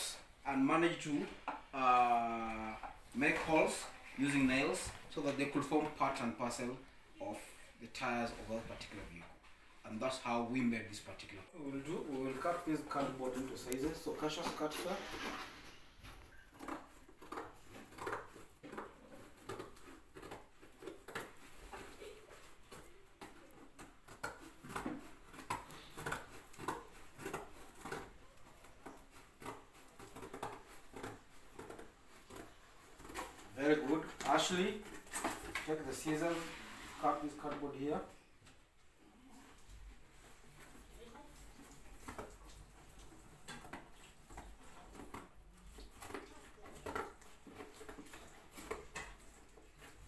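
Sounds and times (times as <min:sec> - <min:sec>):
scissors cutting cardboard: 0:12.4 - 0:36.4, 0:40.4 - 0:50.0.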